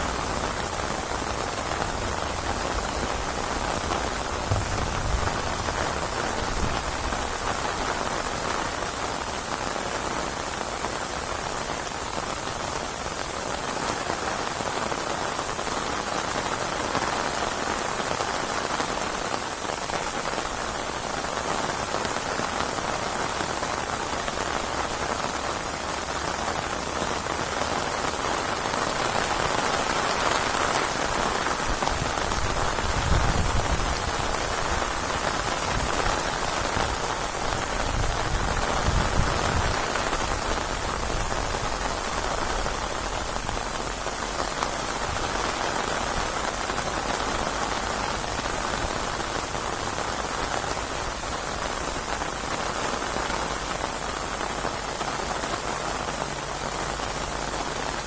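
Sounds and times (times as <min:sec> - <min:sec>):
heavy rain pattering: 0:00.0 - 0:58.0.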